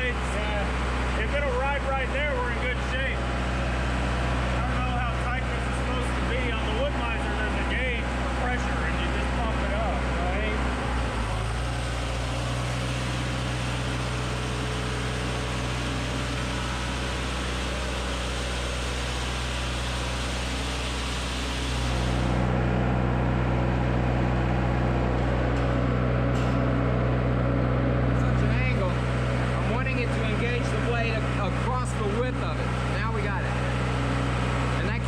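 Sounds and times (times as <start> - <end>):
machine engine running: 0.0 - 35.0.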